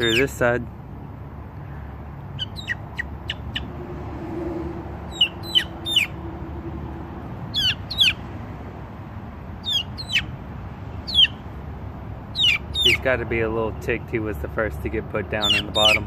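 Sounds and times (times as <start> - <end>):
chicks peeping: 0.0 - 0.4, 2.3 - 3.7, 5.1 - 6.2, 7.5 - 8.2, 9.6 - 10.3, 11.0 - 11.4, 12.3 - 13.2, 15.4 - 16.0.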